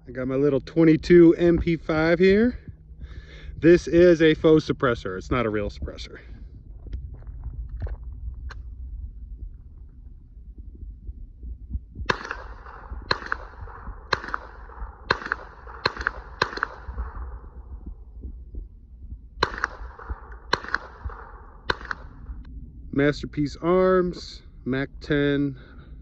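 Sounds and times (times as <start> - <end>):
rifle shots: 12.1 - 18.1, 19.4 - 22.5.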